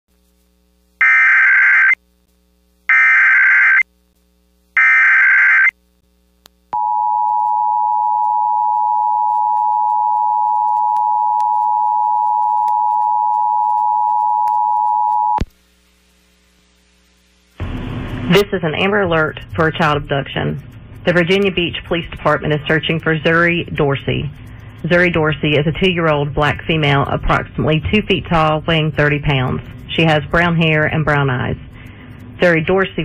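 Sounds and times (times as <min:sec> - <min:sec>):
screechy data bursts: 0:02.9 - 0:03.8, 0:04.8 - 0:05.7.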